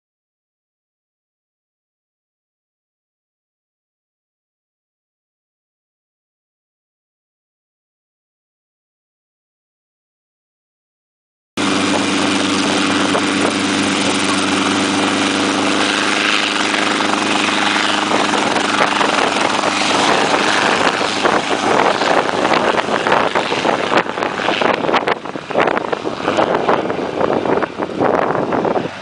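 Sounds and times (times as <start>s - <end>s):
helicopter engine and rotor: 11.6s - 29.0s
wind on microphone: 11.6s - 29.0s.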